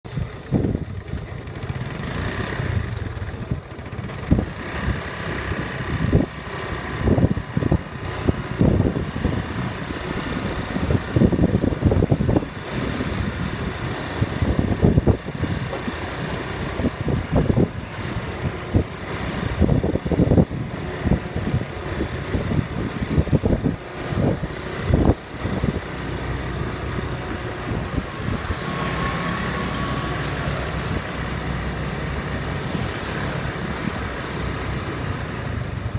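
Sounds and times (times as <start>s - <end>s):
atv engine running: 0.1s - 35.9s
low thumps and buffeting: 2.7s - 28.9s.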